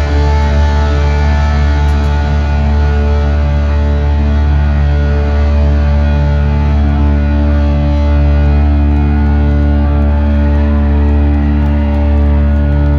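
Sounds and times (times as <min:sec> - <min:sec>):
electric guitars sustained chord: 0:00.0 - 0:12.9.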